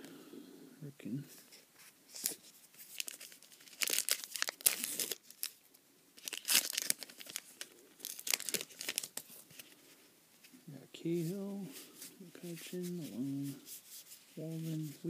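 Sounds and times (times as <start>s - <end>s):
foil wrapper tearing and crinkling: 2.1s - 5.6s, 6.2s - 9.4s.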